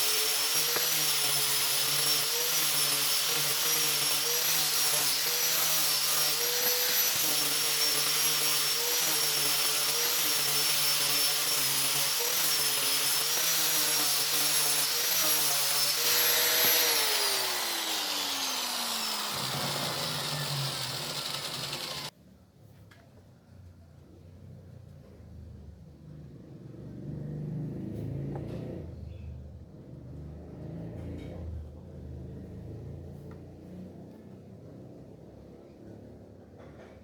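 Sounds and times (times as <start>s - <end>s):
power tool motor whining: 0.0s - 22.1s.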